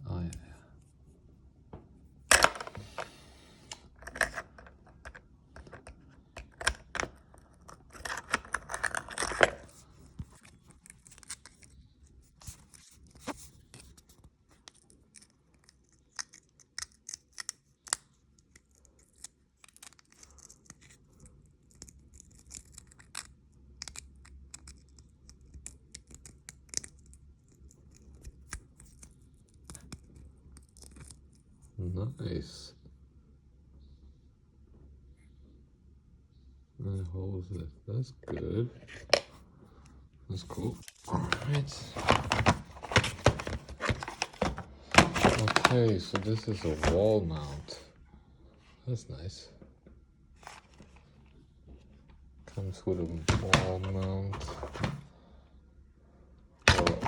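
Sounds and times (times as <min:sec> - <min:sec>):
plastic parts clicking and knocking: 0:02.3 - 0:03.1, 0:04.0 - 0:11.6, 0:38.2 - 0:39.4, 0:40.8 - 0:47.1, 0:56.7 - 0:57.0
packaging rustling: 0:40.6 - 0:47.8, 0:52.7 - 0:55.1, 0:56.7 - 0:57.0.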